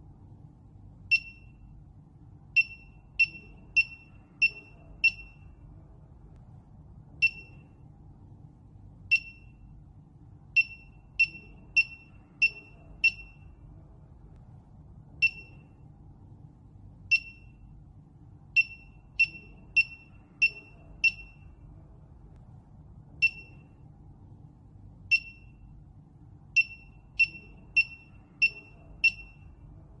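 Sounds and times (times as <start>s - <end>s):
short high-pitched beeps: 1.1s - 1.7s, 2.6s - 5.6s, 7.2s - 7.8s, 9.1s - 9.7s, 10.6s - 13.6s, 15.2s - 15.8s, 17.1s - 17.7s, 18.6s - 21.6s, 23.2s - 23.8s, 25.1s - 25.7s, 26.6s - 29.6s.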